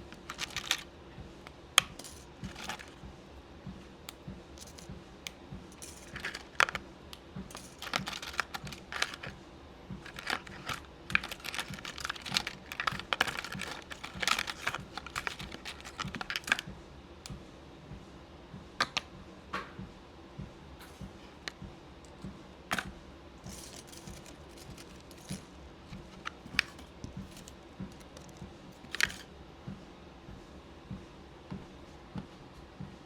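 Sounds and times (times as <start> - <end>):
beads clicking and rattling: 0.0 - 0.8, 1.8 - 3.0, 4.1 - 4.9, 5.7 - 6.8, 7.5 - 9.4, 10.0 - 16.7, 22.7 - 25.4, 26.0 - 29.3.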